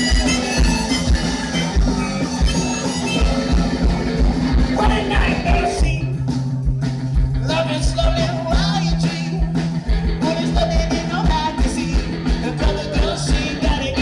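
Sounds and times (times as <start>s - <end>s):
background music with beat: 0.0s - 14.0s
person singing: 4.8s - 6.0s, 7.4s - 14.0s.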